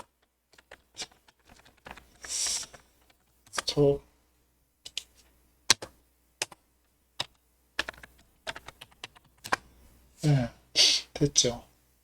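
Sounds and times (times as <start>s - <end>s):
keyboard typing: 0.0s - 3.8s, 4.8s - 6.6s, 7.2s - 9.7s.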